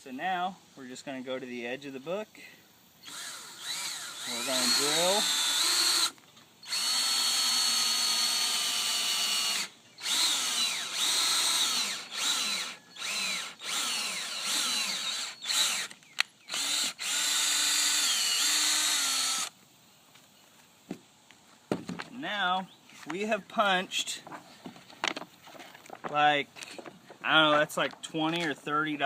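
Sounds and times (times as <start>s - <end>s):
cordless drill boring through book: 3.0s - 19.5s.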